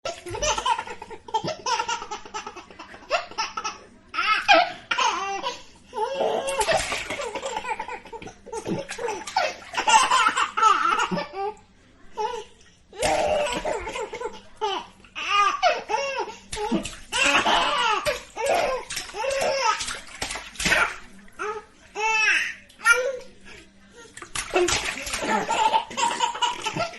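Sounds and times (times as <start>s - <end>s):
baby laughing: 0.1s - 5.6s, 24.5s - 26.9s.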